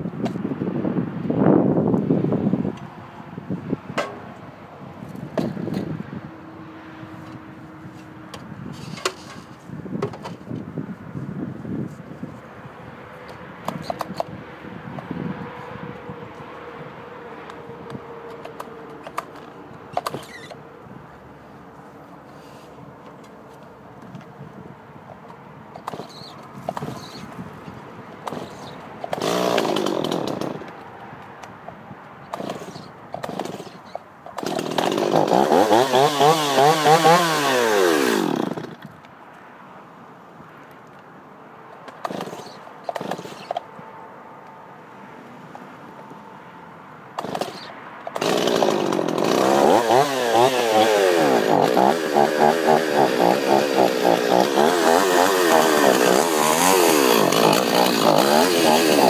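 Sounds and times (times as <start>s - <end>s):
chainsaw revving: 25.8s - 27.2s, 28.3s - 30.6s, 32.3s - 33.8s, 34.4s - 38.8s, 42.0s - 43.5s, 47.2s - 59.0s
chainsaw idling: 28.3s - 30.6s, 34.4s - 38.8s, 47.2s - 59.0s.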